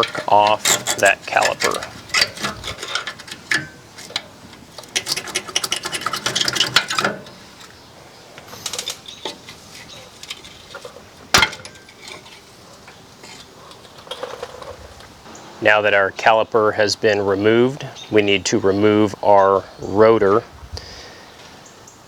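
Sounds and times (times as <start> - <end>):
metal clank: 0.0 - 7.7, 8.4 - 15.0
screwdriver scraping metal: 0.0 - 7.7, 8.4 - 14.8.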